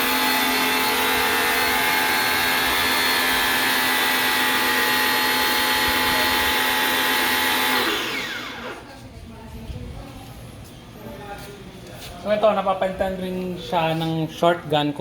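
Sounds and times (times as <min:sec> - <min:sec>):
pressure washer motor humming: 0:00.0 - 0:08.9.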